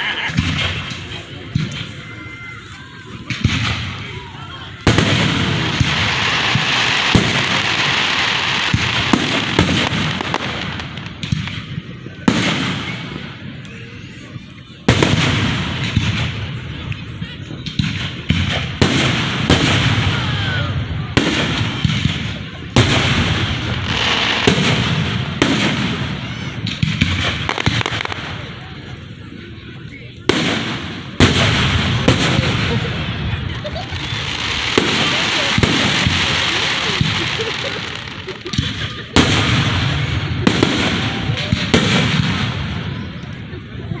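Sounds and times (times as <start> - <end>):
fireworks banging with echo: 0.0 - 44.0
crackling hiss of firework shells: 21.2 - 28.9, 30.2 - 43.4.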